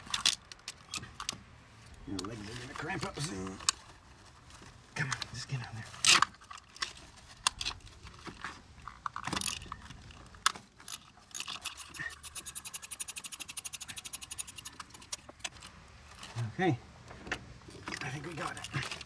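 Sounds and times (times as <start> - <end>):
ratchet wrench clicking rapidly: 11.4 - 15.5
hand tools scraping on metal: 11.6 - 15.5.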